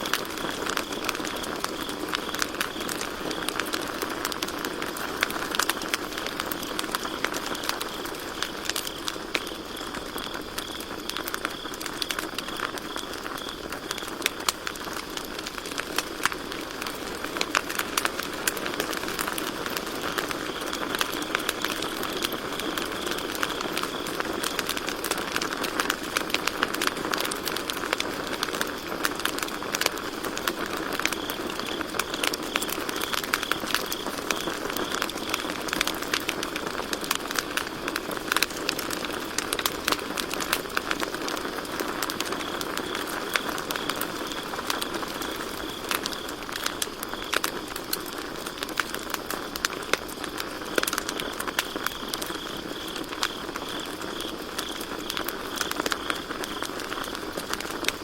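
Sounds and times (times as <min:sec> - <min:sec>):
campfire crackling and popping: 0:00.0 - 0:58.0
crickets trilling: 0:00.0 - 0:58.0.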